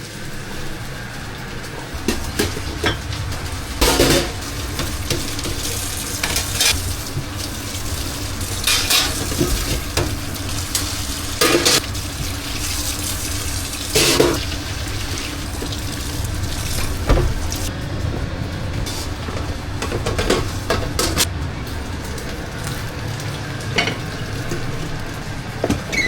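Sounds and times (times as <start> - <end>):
sizzling hiss: 0.0 - 17.7
pots and utensils clattering: 2.0 - 17.7, 18.9 - 21.3.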